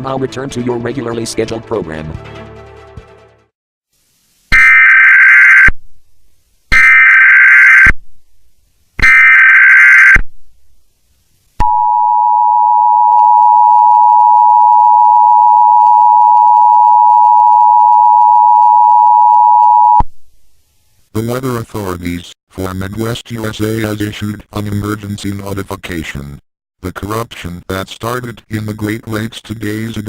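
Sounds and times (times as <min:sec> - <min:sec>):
electronic data burst screech: 0:04.5 - 0:05.7, 0:06.7 - 0:07.9, 0:09.0 - 0:10.2.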